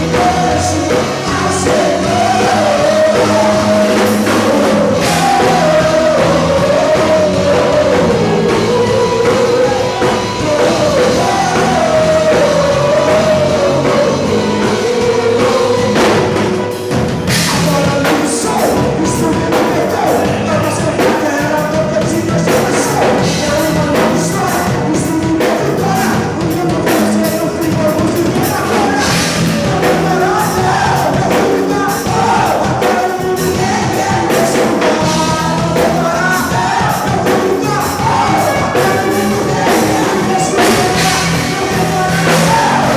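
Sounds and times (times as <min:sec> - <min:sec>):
person singing: 0:00.0 - 0:42.9
rock worship band playing: 0:00.0 - 0:42.9.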